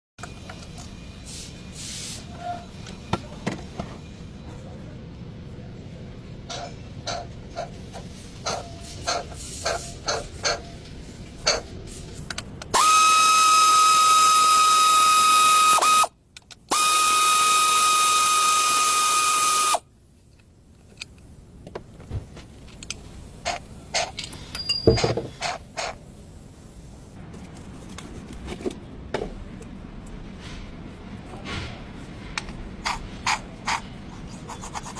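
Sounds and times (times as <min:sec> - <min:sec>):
hiss of air: 0:01.2 - 0:02.4, 0:08.1 - 0:10.2, 0:11.8 - 0:13.0, 0:25.4 - 0:27.2
compressed-air tool whining: 0:12.7 - 0:16.1, 0:16.7 - 0:19.8
metal tools clicking and knocking: 0:22.7 - 0:25.9.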